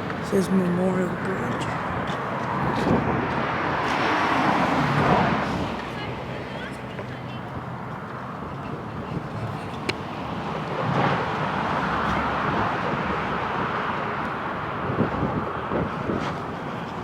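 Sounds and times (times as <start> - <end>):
vehicle road and engine noise: 0.0 - 17.0.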